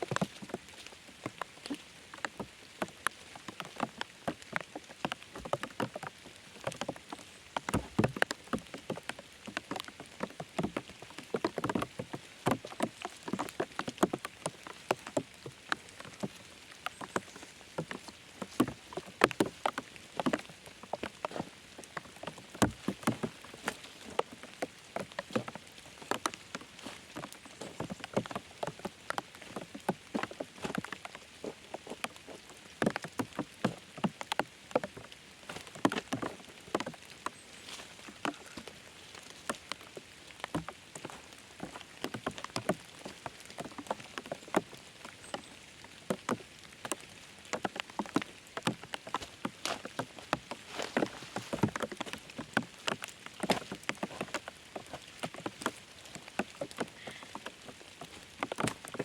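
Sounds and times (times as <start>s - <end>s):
rain drops pattering: 0.0s - 59.0s.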